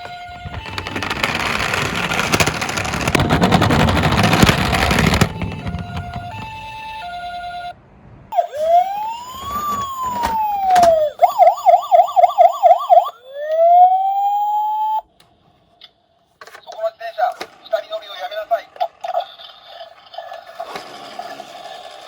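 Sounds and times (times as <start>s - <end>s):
toy electronic siren: 4.6s - 7.7s, 8.3s - 15.1s.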